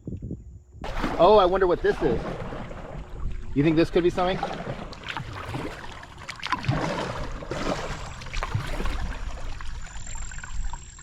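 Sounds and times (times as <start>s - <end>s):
paddle splashing water: 0.8s - 11.0s.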